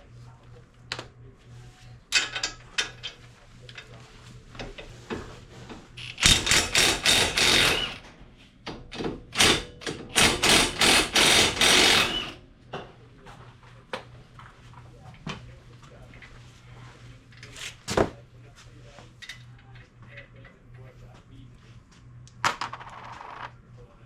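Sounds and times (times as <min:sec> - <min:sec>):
impact wrench hammering: 0:06.0 - 0:08.0, 0:08.7 - 0:12.4.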